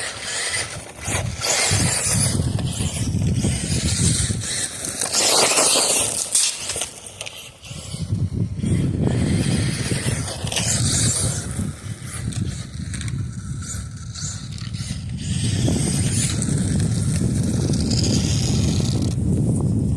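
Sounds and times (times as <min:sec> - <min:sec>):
toy car tyres rumbling on dirt: 0:00.0 - 0:19.9.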